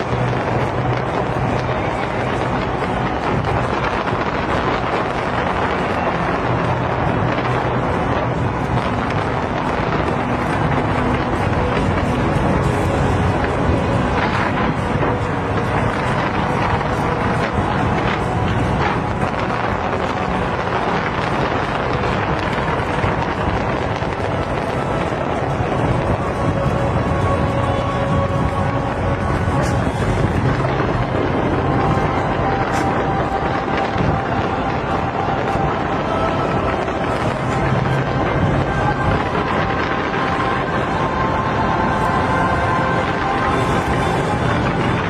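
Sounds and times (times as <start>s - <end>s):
faint music: 0.0s - 45.0s
fireworks booming and crackling: 0.0s - 45.0s.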